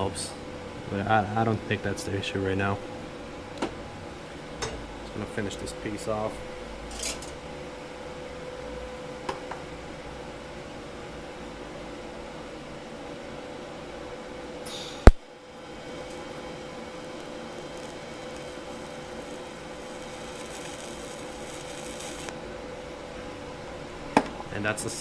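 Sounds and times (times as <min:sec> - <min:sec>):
welding arc buzzing: 0:14.7 - 0:22.4.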